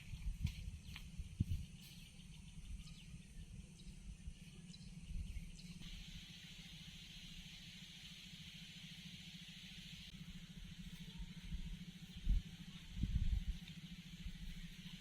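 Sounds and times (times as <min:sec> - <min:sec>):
steady low rumble: 0:00.0 - 0:15.0
high-pitched hiss: 0:05.3 - 0:15.0.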